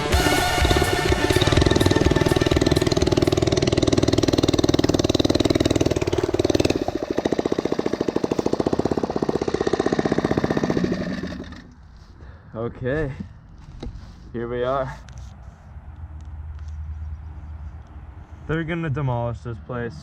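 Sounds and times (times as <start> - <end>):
engine running with rapid pulse: 0.0 - 11.8.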